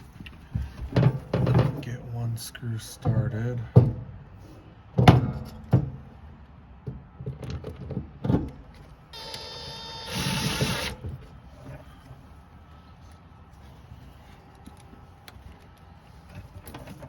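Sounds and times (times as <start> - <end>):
cordless drill whirring: 9.2 - 11.0.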